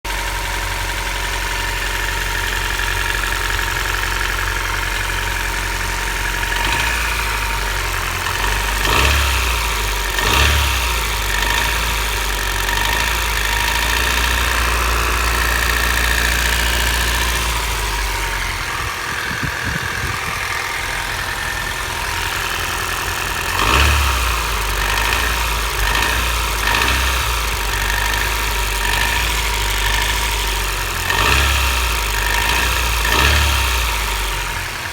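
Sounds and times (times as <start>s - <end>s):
car engine idling: 0.0s - 34.9s
engine knock and rattle: 0.0s - 34.9s.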